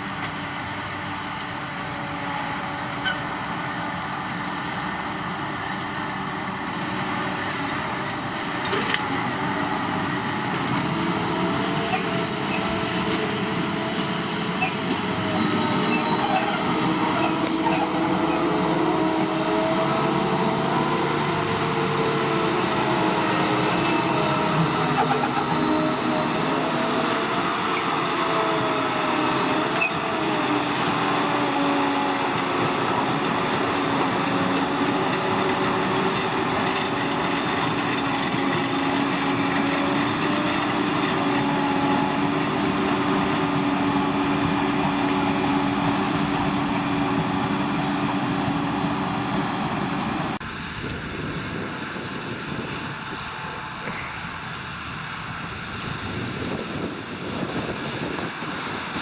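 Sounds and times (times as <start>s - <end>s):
harvesting machinery running: 0.0s - 59.0s.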